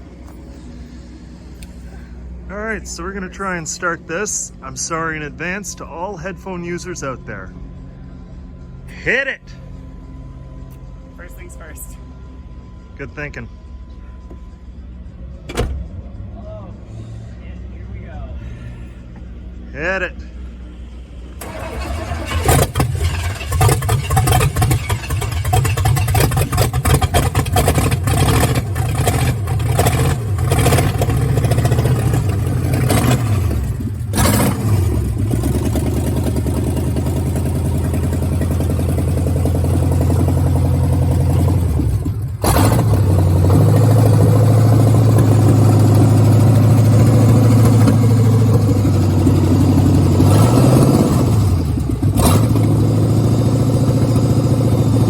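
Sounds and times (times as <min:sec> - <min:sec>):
loud car engine starting and revving: 0:21.3 - 0:55.0.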